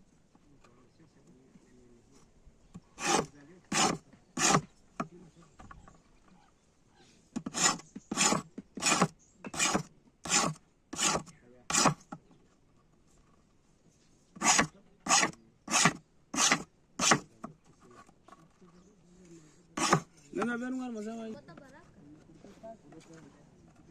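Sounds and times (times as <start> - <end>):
hand file rasping: 3.0 - 4.7, 7.4 - 12.1, 14.4 - 17.3, 19.8 - 20.1.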